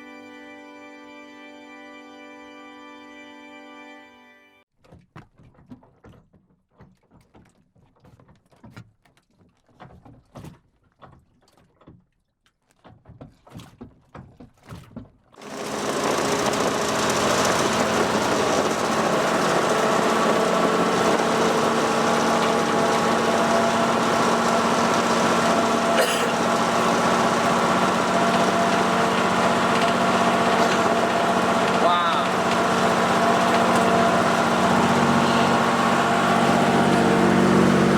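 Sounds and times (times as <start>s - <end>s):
small boat engine running: 15.4s - 37.9s.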